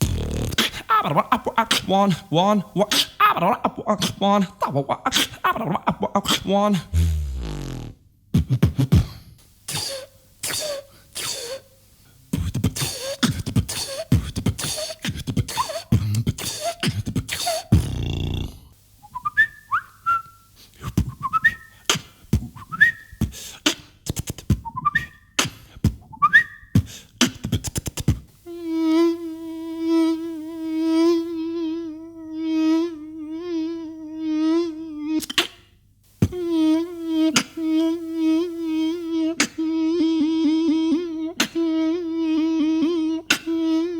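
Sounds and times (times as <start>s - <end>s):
beatboxing beats: 0.0s - 11.6s, 12.3s - 18.8s, 20.7s - 28.4s, 35.2s - 35.6s, 36.2s - 39.6s, 41.4s - 41.7s
held hum: 6.6s - 10.6s
whistled chirps: 19.0s - 21.8s, 22.6s - 23.2s, 24.6s - 25.4s, 26.0s - 26.8s.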